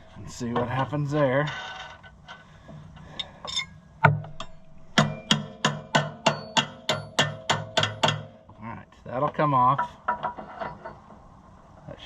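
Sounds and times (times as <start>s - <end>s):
metal-on-metal strikes: 3.5s - 8.6s.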